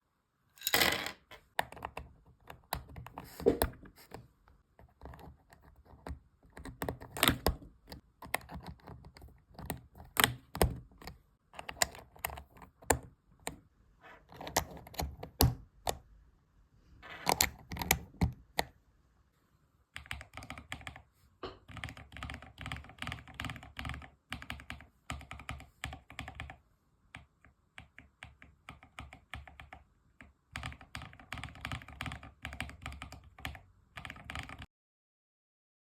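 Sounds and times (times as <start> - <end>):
mechanical keyboard typing: 4.9 - 13.6, 14.2 - 16.0, 17.2 - 18.7, 20.0 - 26.6, 27.2 - 34.7.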